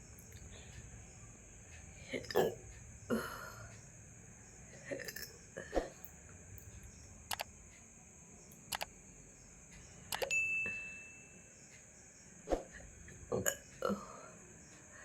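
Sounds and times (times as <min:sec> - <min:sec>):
steady high-pitched hiss: 0:00.0 - 0:15.0
person hiccuping: 0:02.2 - 0:03.3
faint clicks: 0:06.0 - 0:07.9, 0:08.5 - 0:09.0, 0:09.7 - 0:10.3.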